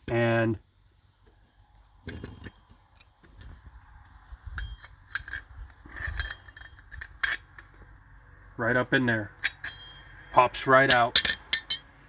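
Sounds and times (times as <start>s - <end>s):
metal tools clinking: 4.4s - 7.9s, 9.2s - 12.0s.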